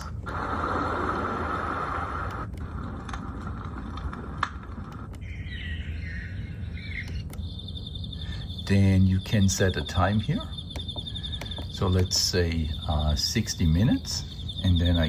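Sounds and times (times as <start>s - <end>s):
pulsing insect-like trill: 5.2s - 15.0s
synthetic bird-like chirping: 5.2s - 15.0s.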